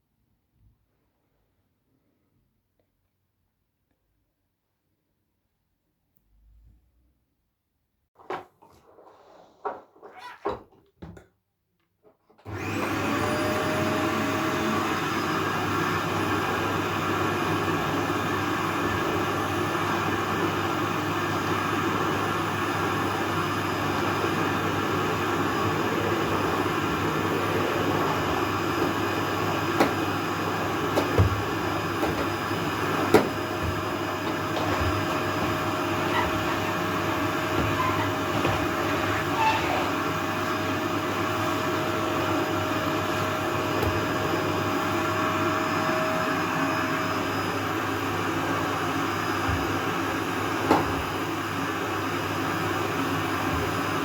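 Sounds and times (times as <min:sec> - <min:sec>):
vacuum cleaner motor whine: 0:12.4 - 0:54.0.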